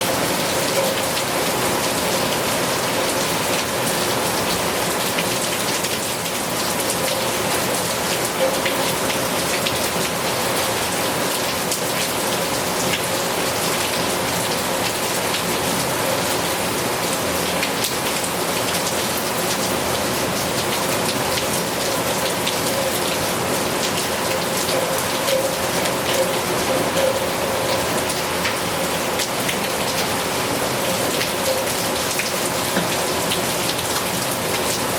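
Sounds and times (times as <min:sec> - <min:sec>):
heavy rain: 0:00.0 - 0:34.9.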